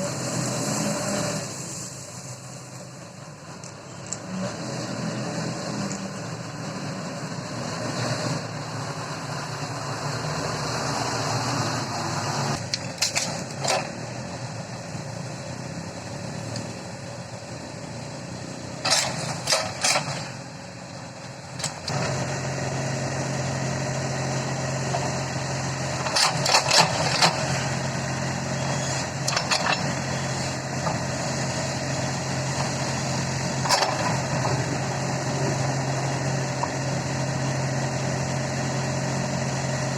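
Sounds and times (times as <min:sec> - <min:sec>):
diesel engine humming: 0:00.0 - 0:39.9
metal clanks and knocks: 0:18.8 - 0:20.3, 0:29.3 - 0:30.0.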